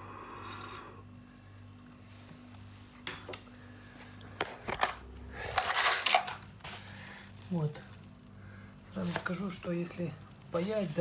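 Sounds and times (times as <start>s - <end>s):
low steady hum: 0.0s - 11.0s.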